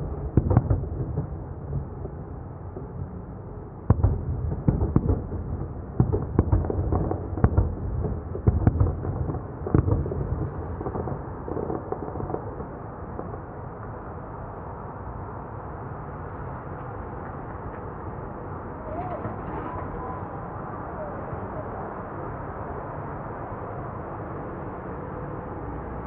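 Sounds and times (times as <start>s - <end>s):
fireworks bangs: 3.9s - 13.5s.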